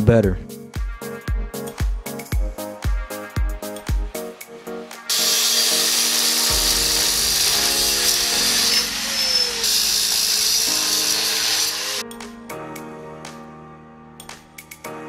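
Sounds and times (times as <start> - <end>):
background music: 0.0 - 15.0
power tool running: 5.1 - 12.0.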